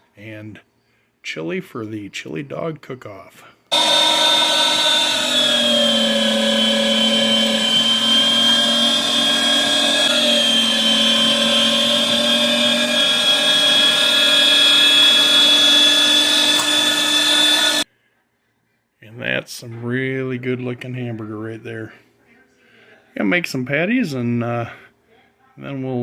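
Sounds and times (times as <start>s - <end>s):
meat grinder motor whining: 3.7s - 17.8s.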